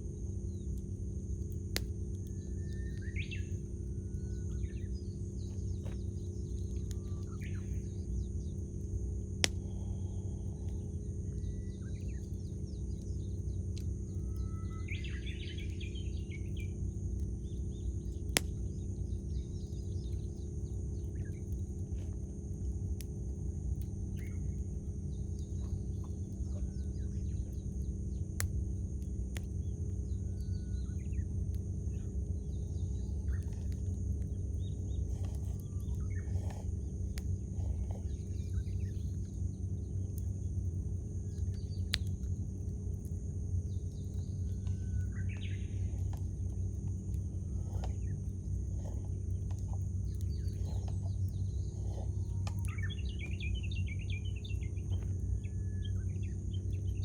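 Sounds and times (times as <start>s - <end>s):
campfire crackling and popping: 0.6s - 3.9s, 4.9s - 9.9s, 10.5s - 14.2s, 14.9s - 30.2s, 30.8s - 53.6s
birds chirping: 31.9s - 40.1s, 43.7s - 57.0s.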